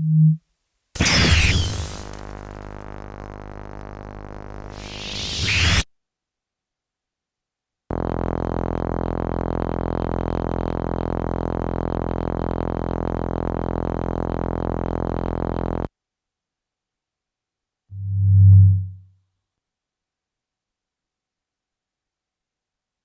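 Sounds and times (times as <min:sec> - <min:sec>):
buzzy low synthesizer drone: 0:01.0 - 0:05.8, 0:07.9 - 0:15.9, 0:17.9 - 0:19.1.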